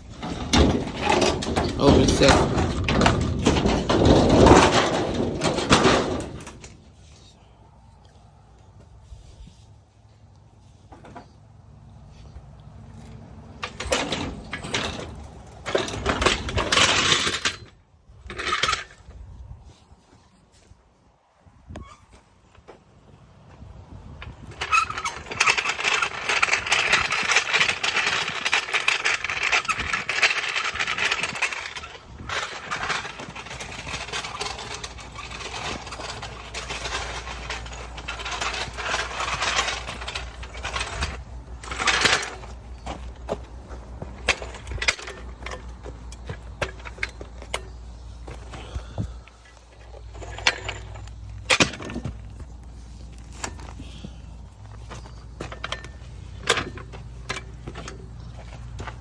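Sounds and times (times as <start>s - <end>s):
metallic clanks and knocks: 0.0s - 6.8s, 13.6s - 17.7s, 24.5s - 52.6s, 54.6s - 59.0s.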